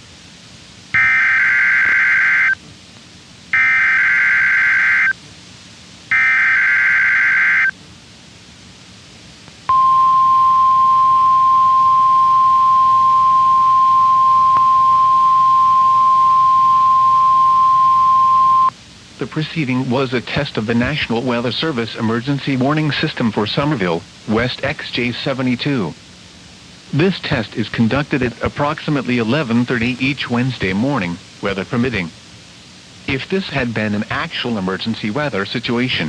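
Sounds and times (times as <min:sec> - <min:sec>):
steady warning alarm tone: 0:01.0 - 0:02.6, 0:03.6 - 0:05.1, 0:06.1 - 0:07.7, 0:09.7 - 0:18.7
warbling data tones: 0:09.7 - 0:18.7.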